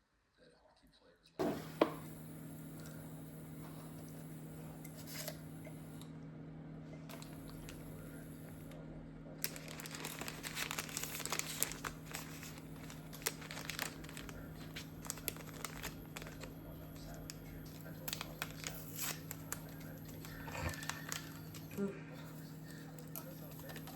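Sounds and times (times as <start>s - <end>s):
steady low hum: 1.4s - 23.9s
crinkling and crackling handling: 9.4s - 23.9s.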